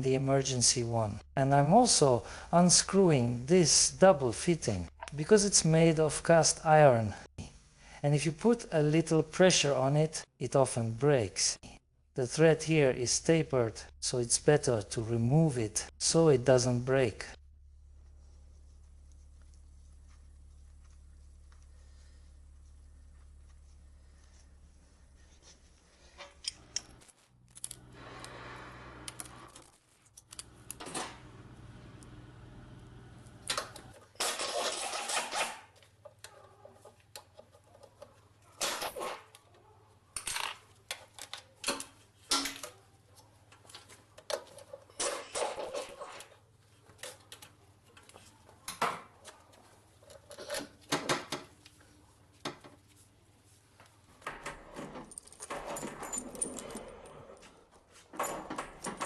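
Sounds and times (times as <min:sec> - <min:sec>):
metal tools and parts clinking: 0:44.2 - 0:46.4, 0:54.8 - 0:57.3.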